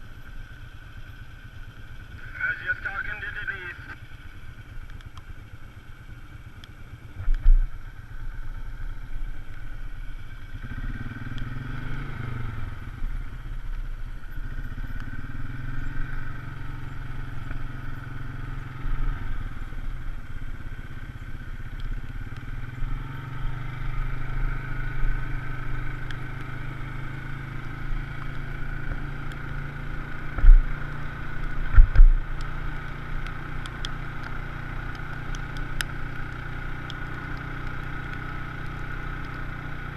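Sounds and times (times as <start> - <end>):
off-road vehicle engine running: 0.0 - 39.9
sharp low thumps: 31.6 - 32.3.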